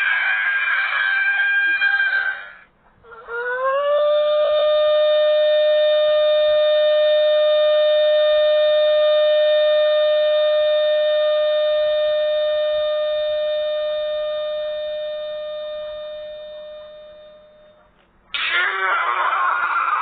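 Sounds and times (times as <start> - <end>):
harsh noisy scream: 0.0 - 4.7, 18.3 - 20.0
cartoon scream held on one pitch: 0.0 - 4.9, 18.3 - 20.0.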